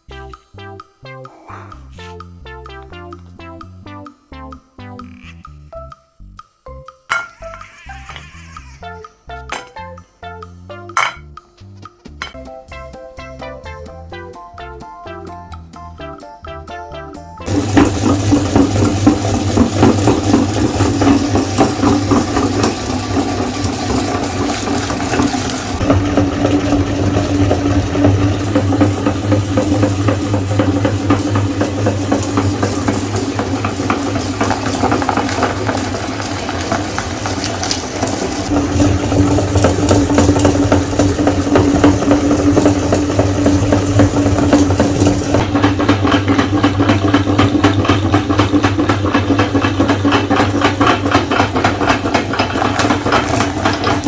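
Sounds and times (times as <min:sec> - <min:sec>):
crackling rattle of grinding cookies: 0:07.1 - 0:10.0, 0:17.4 - 0:54.0
meat grinder motor running: 0:07.3 - 0:09.6, 0:17.4 - 0:54.0.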